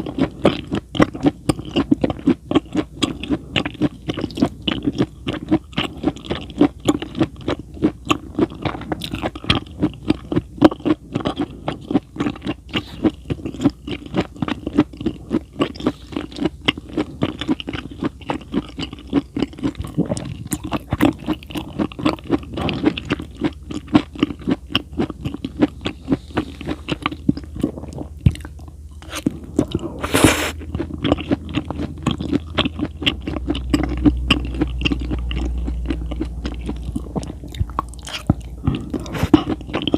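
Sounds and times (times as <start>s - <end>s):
wet crunchy chewing: 0.0s - 39.9s
short loud scraping: 30.0s - 30.6s.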